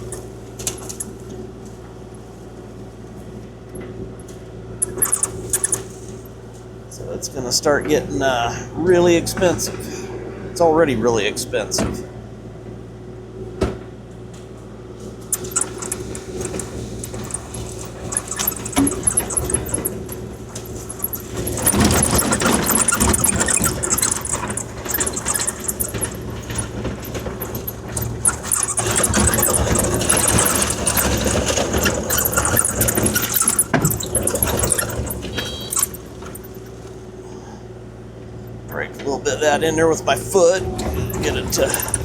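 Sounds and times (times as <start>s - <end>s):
diesel engine running: 15.0s - 42.0s
bucket scraping gravel: 15.4s - 36.8s, 41.0s - 42.0s.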